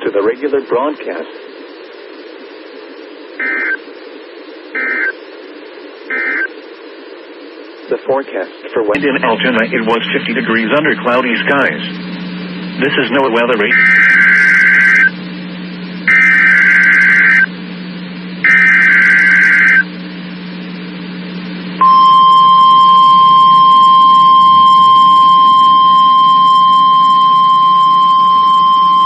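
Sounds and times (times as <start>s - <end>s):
screeching warble data bursts: 3.4s - 3.8s, 4.8s - 5.2s, 6.1s - 6.5s, 13.7s - 15.1s, 16.1s - 17.5s, 18.4s - 19.8s, 21.8s - 29.0s
steady warning alarm tone: 3.4s - 3.8s, 4.8s - 5.1s, 6.1s - 6.5s, 13.1s - 15.1s, 16.0s - 17.5s, 18.4s - 19.9s, 21.8s - 29.0s
low hum: 8.5s - 29.0s.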